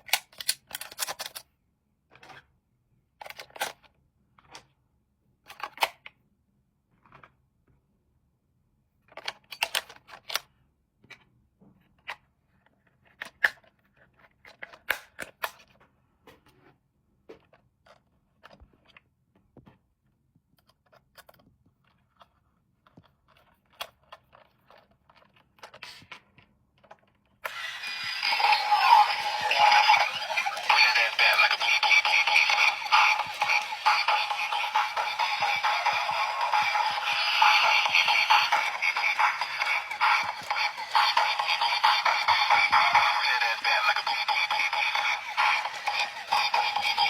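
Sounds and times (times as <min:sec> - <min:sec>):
plastic toy and packaging handled: 0:00.0 - 0:07.9, 0:08.9 - 0:47.0
loud electronic toy music: 0:27.5 - 0:47.0.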